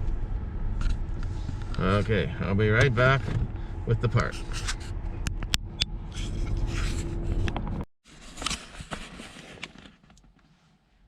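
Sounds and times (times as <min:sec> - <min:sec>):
car engine rumble: 0:00.0 - 0:07.9.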